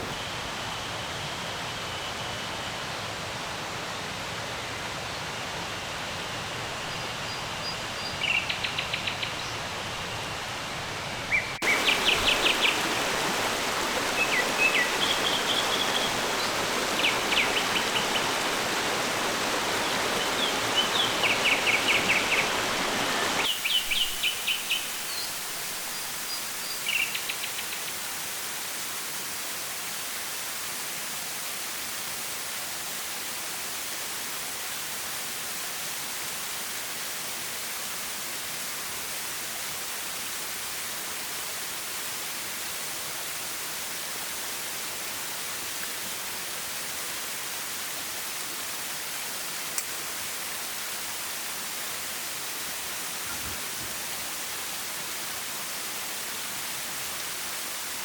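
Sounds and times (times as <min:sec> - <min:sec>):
stream flowing: 0:02.9 - 0:58.0
small birds chirping: 0:11.2 - 0:27.9.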